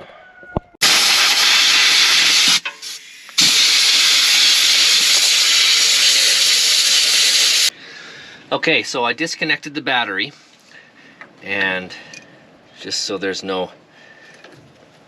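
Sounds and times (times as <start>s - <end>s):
loud hissing of air or gas: 0.8s - 7.8s.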